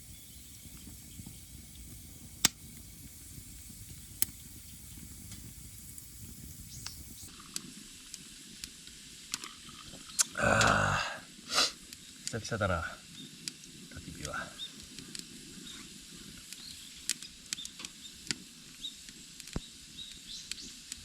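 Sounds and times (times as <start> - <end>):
wood fire crackling and popping: 0.0 - 11.0, 13.1 - 21.0
loud voice-like sound: 10.3 - 11.2.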